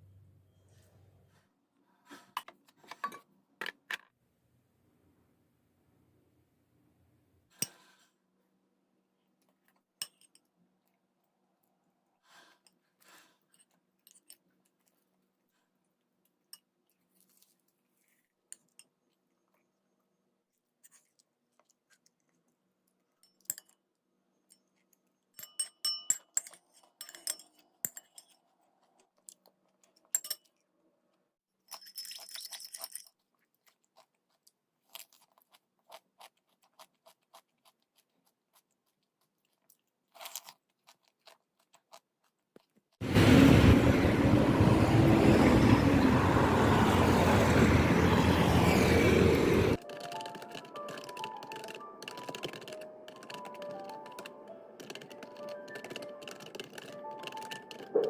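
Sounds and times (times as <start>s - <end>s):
crunchy chewing: 33.2s - 43.0s, 49.8s - 58.0s.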